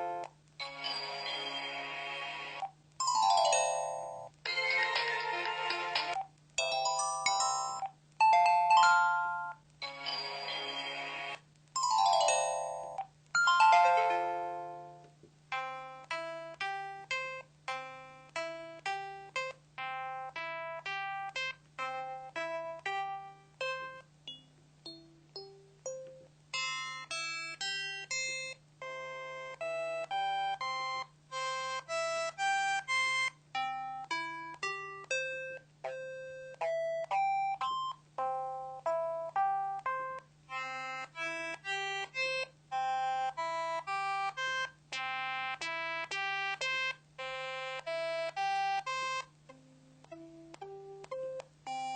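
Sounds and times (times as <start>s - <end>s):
phone ringtone melody: 3.0s - 11.0s, 11.8s - 16.0s, 50.1s - 51.9s.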